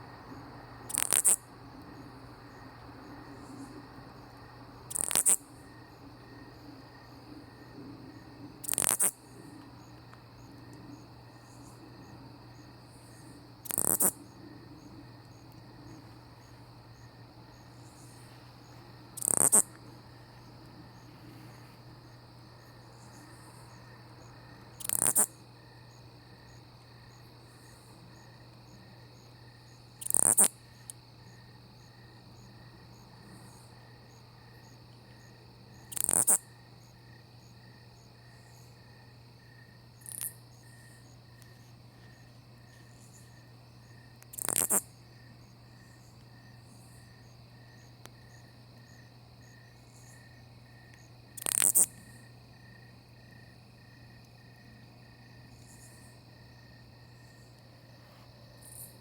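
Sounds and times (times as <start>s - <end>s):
chorus of night insects: 0.0s - 59.0s
katydid raspy calling: 0.9s - 1.5s, 4.9s - 5.5s, 8.6s - 9.3s, 13.6s - 14.4s, 19.2s - 19.8s, 24.8s - 25.4s, 30.0s - 30.6s, 35.9s - 36.4s, 44.3s - 44.9s, 51.4s - 52.0s.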